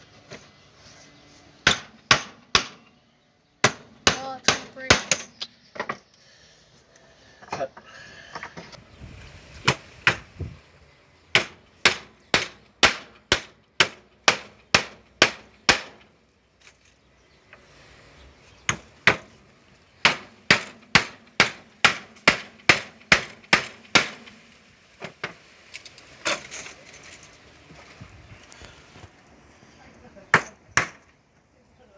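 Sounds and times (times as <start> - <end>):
hammer driving nails into wood: 11.4 - 16.1, 20.0 - 24.2.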